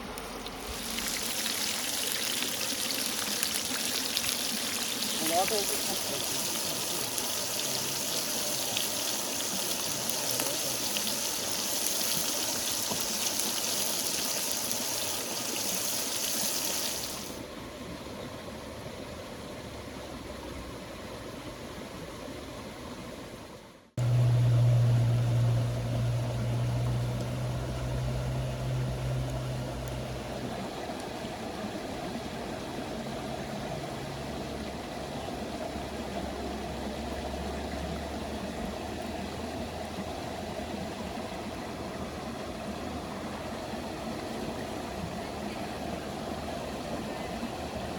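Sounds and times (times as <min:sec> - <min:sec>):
flowing water rushing: 0:00.0 - 0:18.5, 0:24.0 - 0:47.9
steady low hum: 0:24.0 - 0:30.8.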